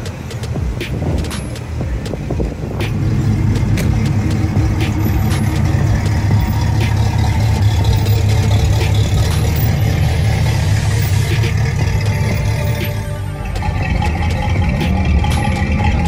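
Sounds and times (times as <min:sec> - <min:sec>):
car engine idling: 0:00.0 - 0:16.0.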